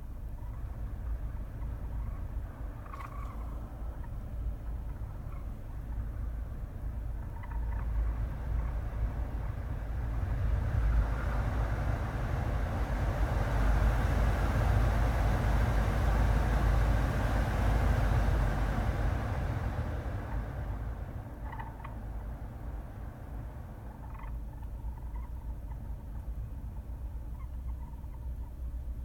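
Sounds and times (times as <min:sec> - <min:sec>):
faint fan squeaks: 0:00.0 - 0:29.0
steady low rumble: 0:00.0 - 0:29.0
heater blower fan air rush: 0:07.9 - 0:23.9.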